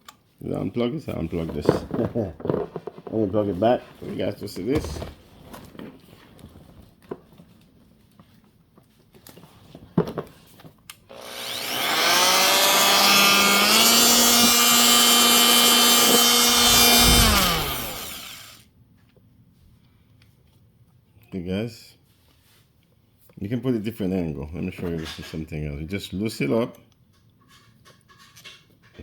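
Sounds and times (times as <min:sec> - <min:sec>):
oscillating multi-tool whining: 0:11.1 - 0:18.6.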